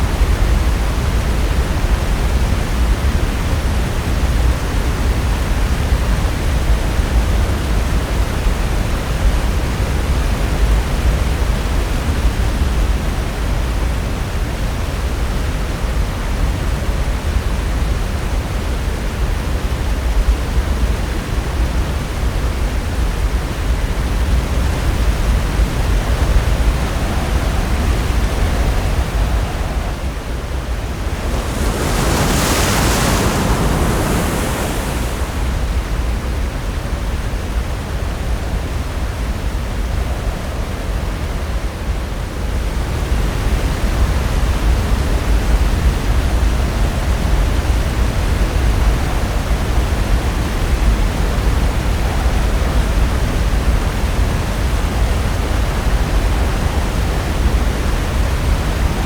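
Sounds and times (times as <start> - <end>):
surf breaking on shore: 23.1 - 37.4.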